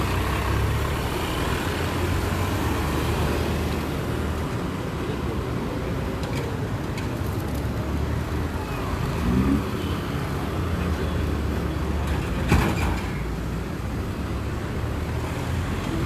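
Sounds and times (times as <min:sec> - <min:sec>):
road traffic rumble: 0:00.0 - 0:16.0.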